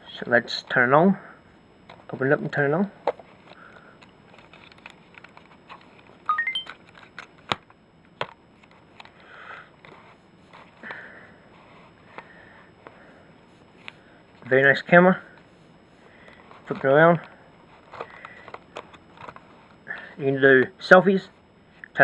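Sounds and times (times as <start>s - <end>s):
rising electronic beeps: 6.3s - 6.7s
power-on tone: 6.3s - 6.8s.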